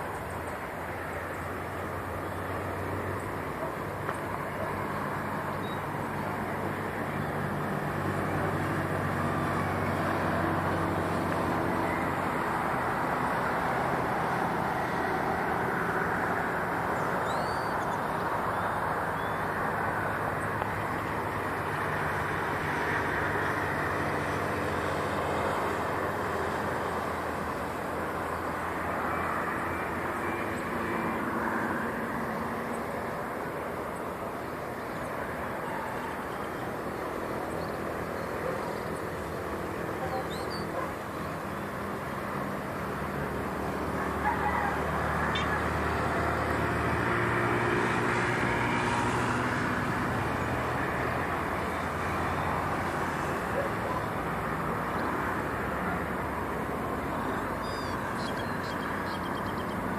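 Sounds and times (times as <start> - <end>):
traffic hum: 0.0 - 59.9
bird chirps: 17.0 - 19.5, 40.0 - 40.8, 57.3 - 59.8.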